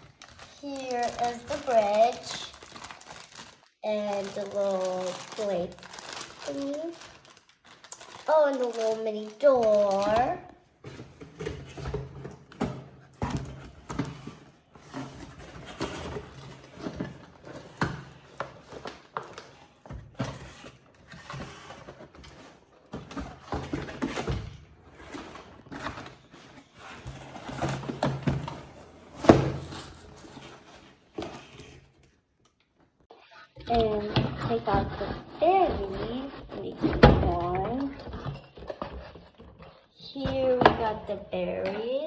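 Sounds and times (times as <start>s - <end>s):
plastic packaging rustling: 0.0s - 32.3s.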